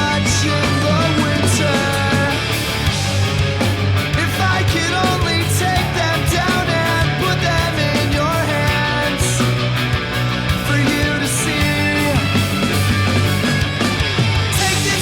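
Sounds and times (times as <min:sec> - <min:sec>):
person singing: 0:00.0 - 0:02.6, 0:04.2 - 0:09.6, 0:10.6 - 0:12.8, 0:14.6 - 0:15.0
distorted guitars: 0:00.0 - 0:15.0
drums: 0:00.0 - 0:15.0.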